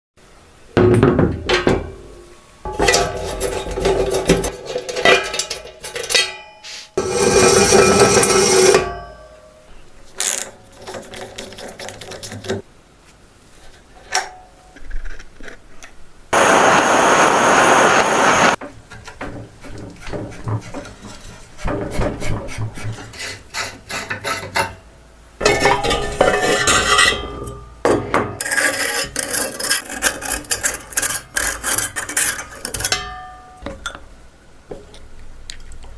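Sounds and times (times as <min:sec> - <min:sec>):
scraping and rubbing metal: 0:02.8 - 0:08.8, 0:28.4 - 0:32.9
steady hiss: 0:16.3 - 0:18.6.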